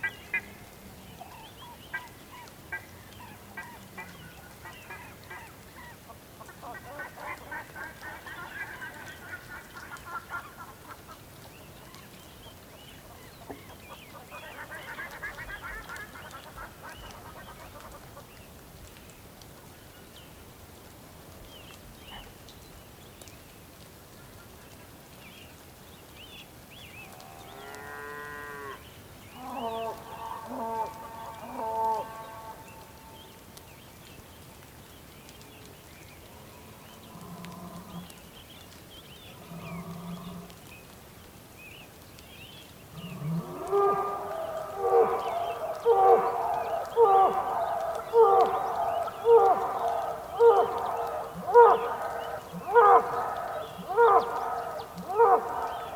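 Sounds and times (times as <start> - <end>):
bulls mooing: 43.0 - 55.9.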